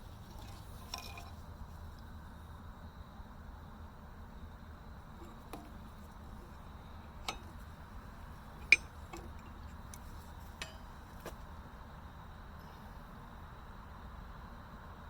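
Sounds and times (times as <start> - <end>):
wrenches clinking against steel: 0.0 - 1.5, 5.2 - 11.5.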